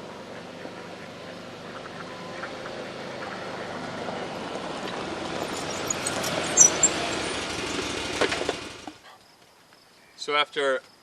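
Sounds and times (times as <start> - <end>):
utility vehicle driving: 0.0 - 9.0
body rattling and squeaking: 5.2 - 8.6.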